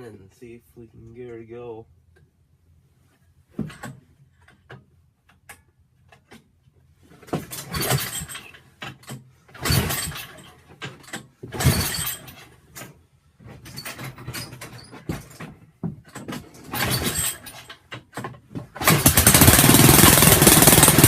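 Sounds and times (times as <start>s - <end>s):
recoil starter pulls: 7.2s - 12.9s, 16.2s - 21.0s.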